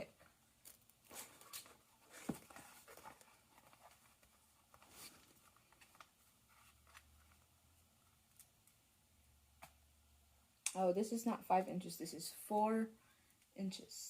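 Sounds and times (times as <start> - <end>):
vinyl sheets rustling: 0.7 - 8.4.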